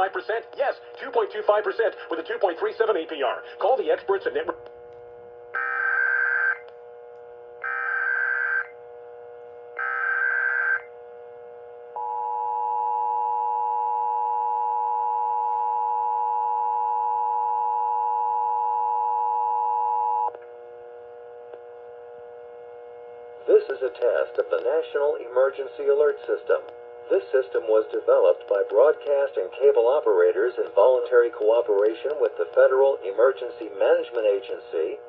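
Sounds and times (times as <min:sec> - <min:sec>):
warbling modem-like data bursts: 0:05.5 - 0:06.7, 0:07.6 - 0:08.8, 0:09.8 - 0:10.9.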